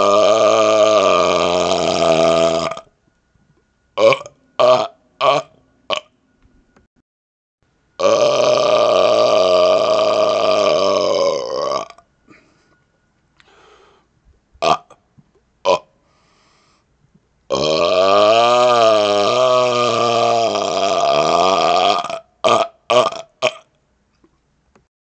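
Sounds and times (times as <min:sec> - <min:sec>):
man burping: 0:00.0 - 0:02.9, 0:04.0 - 0:06.1, 0:08.0 - 0:12.6, 0:14.6 - 0:15.0, 0:15.6 - 0:16.0, 0:17.5 - 0:23.7.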